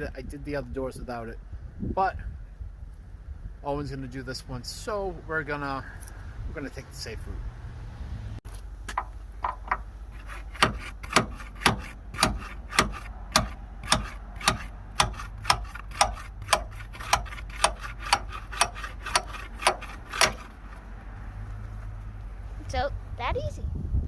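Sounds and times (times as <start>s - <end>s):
hammer striking metal tool: 10.5s - 20.5s.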